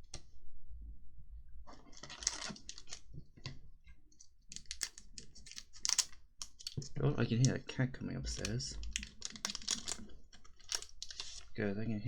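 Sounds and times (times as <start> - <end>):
rustle of pack wrapper: 1.9 - 3.0, 8.3 - 11.6
cards clicking and sliding: 4.5 - 7.6, 8.3 - 11.5.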